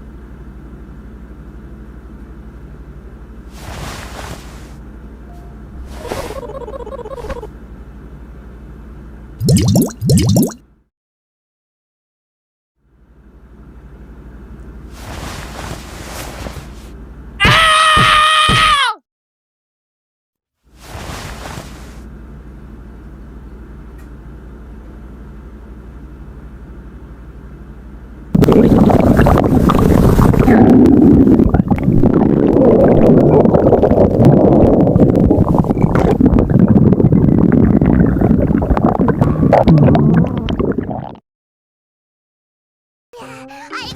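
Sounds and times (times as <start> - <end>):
stomach growling: 28.4 - 41.2.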